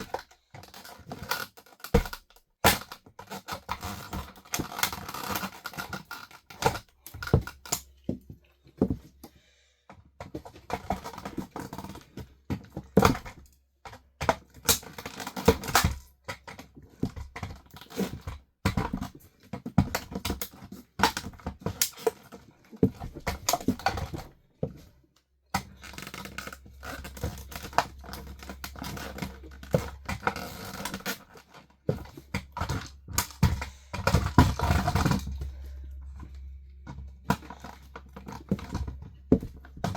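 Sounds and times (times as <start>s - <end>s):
plastic toy cracking under heels: 0.0s - 7.9s, 10.6s - 22.2s, 22.8s - 24.3s, 25.6s - 35.4s.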